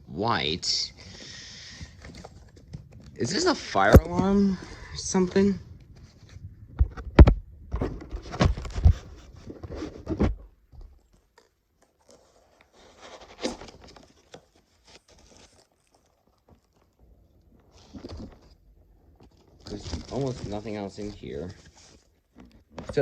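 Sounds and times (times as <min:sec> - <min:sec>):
faint rustling: 0:00.9 - 0:23.0
paper crinkling and tearing: 0:11.1 - 0:17.0, 0:19.2 - 0:22.2.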